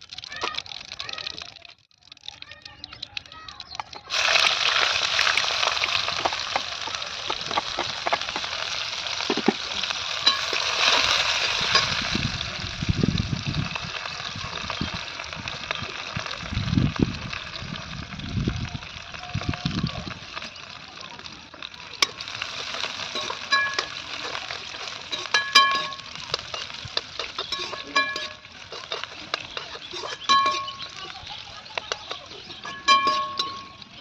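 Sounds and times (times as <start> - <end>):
food sizzling in hot oil: 0.0 - 34.0
stirring knocks in pan: 5.4 - 10.7, 23.0 - 33.8.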